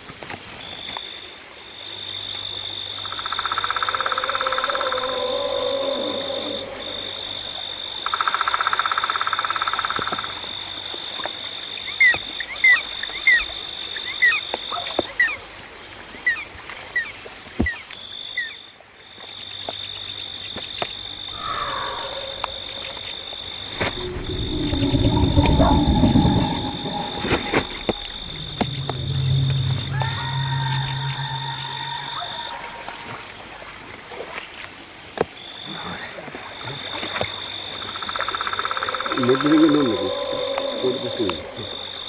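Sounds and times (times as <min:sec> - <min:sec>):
high-pitched insect trill: 0:01.8 - 0:14.6, 0:18.0 - 0:33.5, 0:35.4 - 0:42.0
frogs calling: 0:02.2 - 0:10.4, 0:20.0 - 0:33.4, 0:35.6 - 0:42.0
low rumbling: 0:21.3 - 0:33.4, 0:38.5 - 0:42.0.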